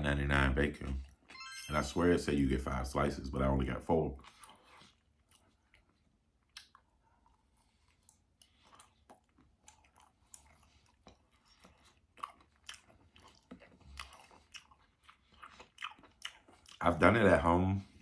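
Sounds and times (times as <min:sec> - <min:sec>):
person chewing crisp food: 0:04.2 - 0:18.0.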